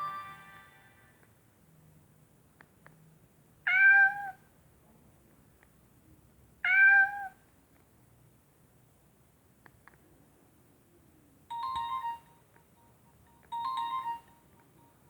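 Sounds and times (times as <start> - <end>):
cat meow ringtone: 3.7 - 4.4, 11.5 - 12.4, 13.5 - 15.0.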